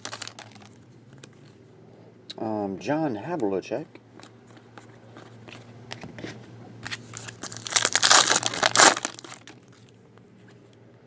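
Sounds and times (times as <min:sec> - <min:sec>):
foil wrapper tearing and crinkling: 0:00.0 - 0:00.7, 0:07.2 - 0:09.6.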